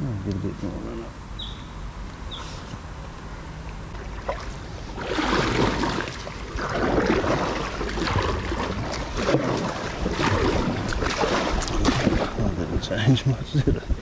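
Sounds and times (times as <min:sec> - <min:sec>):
kayak paddle splashing water: 0:03.9 - 0:12.7.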